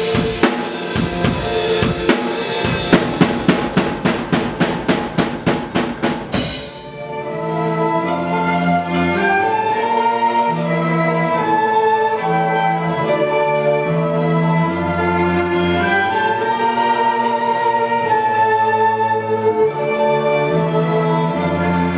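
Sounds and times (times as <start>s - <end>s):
bass line: 0.0s - 6.6s
drum kit beating: 0.0s - 7.1s
orchestral strings held notes: 0.0s - 21.9s.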